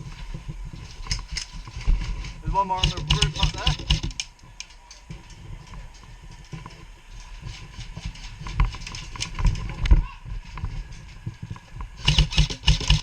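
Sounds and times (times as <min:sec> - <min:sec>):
airsoft gun clicks and knocks: 0:02.8 - 0:04.8, 0:12.0 - 0:13.0.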